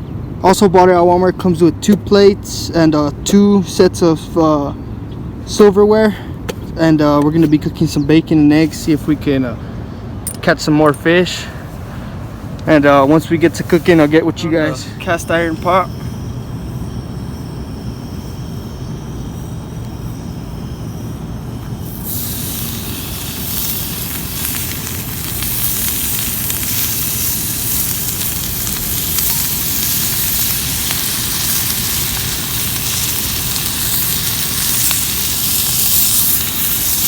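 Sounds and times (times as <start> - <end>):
low steady rumble: 8.0 - 37.0
bacon sizzling in a skillet: 21.8 - 37.0.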